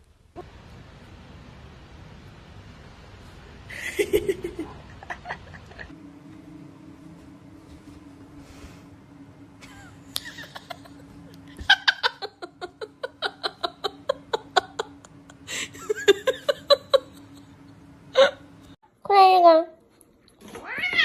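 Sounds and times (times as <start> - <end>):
faint steady hum: 0.0 - 20.4
person laughing: 3.7 - 5.9, 9.6 - 17.6.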